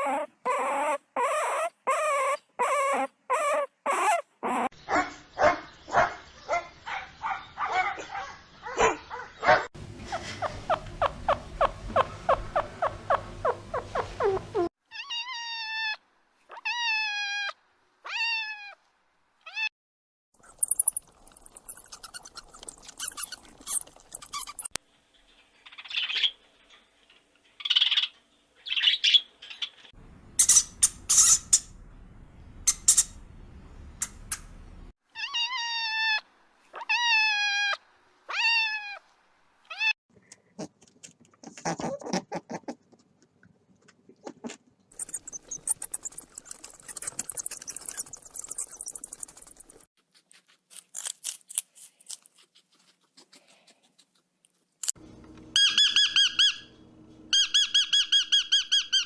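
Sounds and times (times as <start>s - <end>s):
animal squeaks: 0.0s - 4.7s, 10.1s - 18.8s, 20.5s - 24.8s, 30.4s - 31.7s, 32.7s - 33.2s, 35.2s - 39.0s, 44.9s - 49.9s, 55.6s - 56.7s
kitten-like mewing cries: 0.0s - 4.7s, 14.2s - 18.8s, 35.2s - 39.0s.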